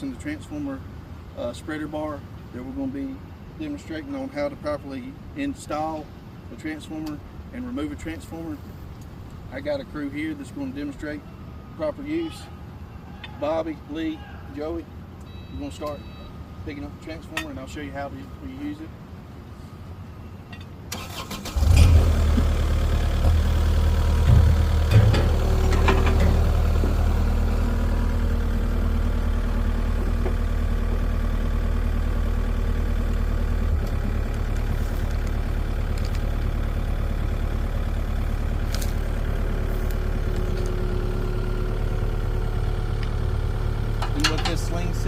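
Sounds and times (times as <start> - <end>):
truck engine starting and idling: 20.8 - 45.0
short knocks and clanks: 24.2 - 27.0.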